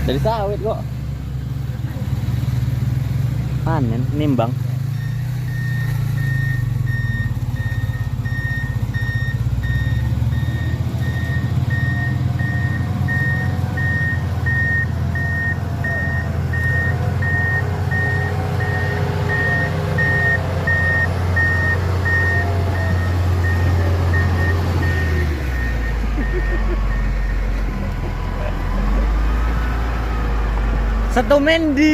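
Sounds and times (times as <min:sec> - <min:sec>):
vehicle engine running: 0:00.0 - 0:31.9
reversing alarm beeping: 0:04.8 - 0:29.4.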